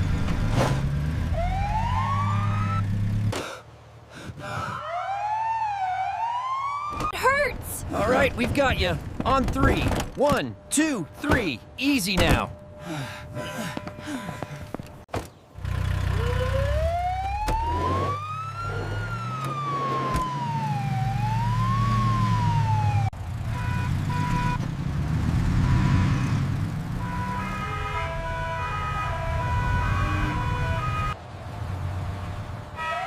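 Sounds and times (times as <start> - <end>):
emergency siren wailing: 1.3 - 3.0, 4.6 - 7.2, 16.0 - 23.2, 27.0 - 31.2
low vehicle engine hum: 12.5 - 27.6.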